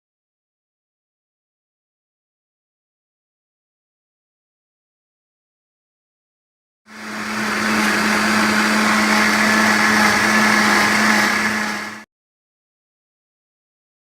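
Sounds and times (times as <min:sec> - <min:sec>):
small electric motor humming: 0:07.0 - 0:12.0.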